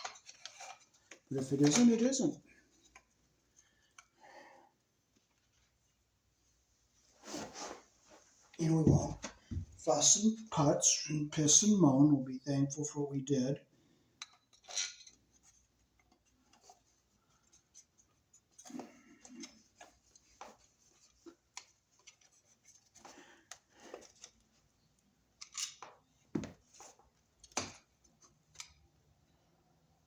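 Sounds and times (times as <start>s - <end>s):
wires clicking and scraping: 0.0s - 4.1s.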